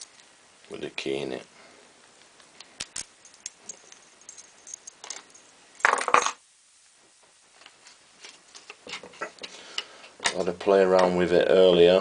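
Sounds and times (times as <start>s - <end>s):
metal lock and key clinking: 2.8s - 6.0s.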